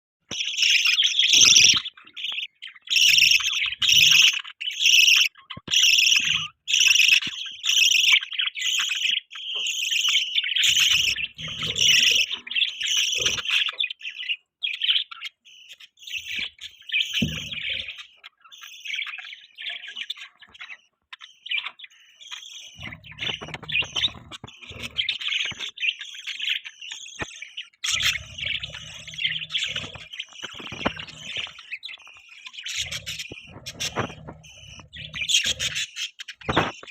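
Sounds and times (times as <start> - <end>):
budgies chirping: 0.2 - 36.9.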